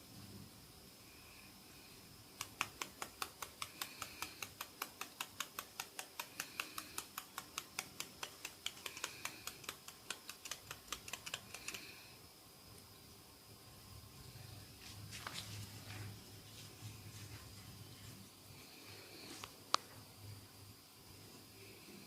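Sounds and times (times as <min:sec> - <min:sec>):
rapid tapping on head: 0:02.4 - 0:12.0.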